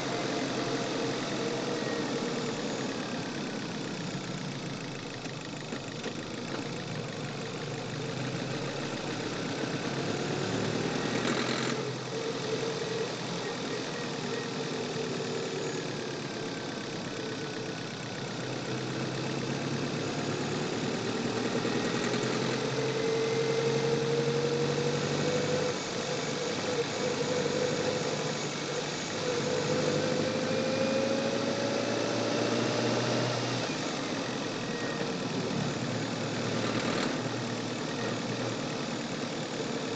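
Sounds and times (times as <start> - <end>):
car engine accelerating: 0.0 - 39.9
engine knocking: 1.1 - 23.0, 33.7 - 39.9.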